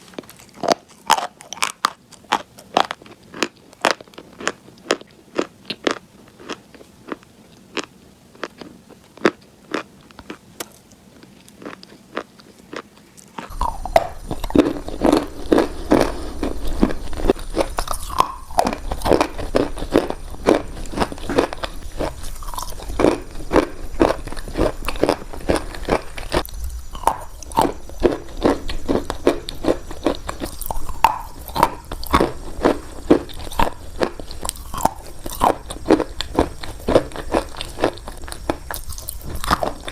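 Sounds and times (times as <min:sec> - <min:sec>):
crunching chewing of chalk: 0:00.0 - 0:39.9
low hum: 0:13.5 - 0:35.4.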